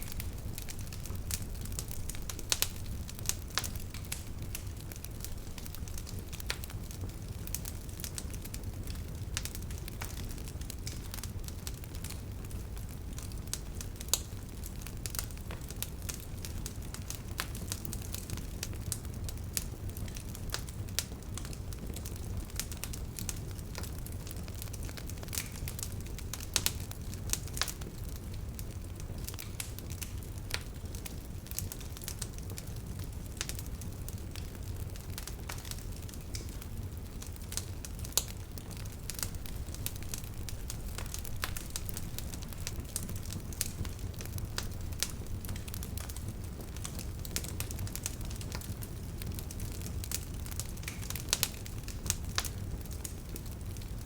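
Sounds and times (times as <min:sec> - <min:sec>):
sharp fire pops: 0:00.0 - 0:11.8, 0:34.3 - 0:54.0
fire crackling: 0:00.0 - 0:54.0
fire low rumble: 0:00.0 - 0:54.0.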